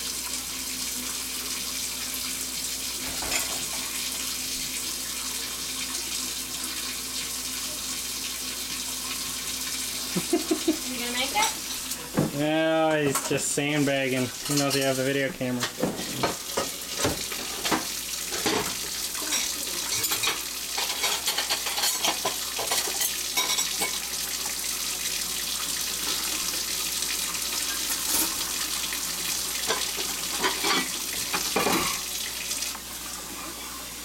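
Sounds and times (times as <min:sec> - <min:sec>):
running water hiss: 0:00.0 - 0:34.0
dishes and cutlery clinking: 0:03.0 - 0:03.9, 0:11.4 - 0:13.4, 0:14.3 - 0:24.6, 0:27.7 - 0:28.5, 0:29.6 - 0:32.1.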